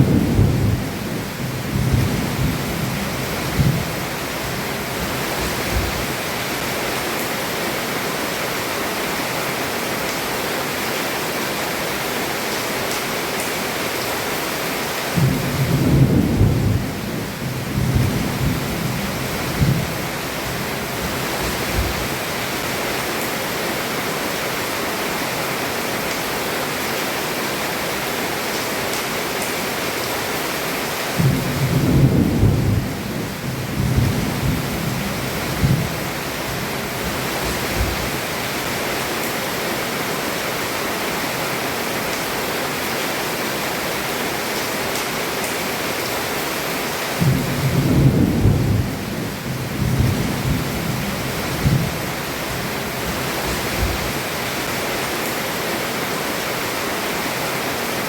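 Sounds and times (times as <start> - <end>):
thunder rumbling: 0.0 - 4.1, 15.2 - 22.1, 31.2 - 38.2, 47.2 - 54.2
heavy rain on a roof: 0.0 - 58.0.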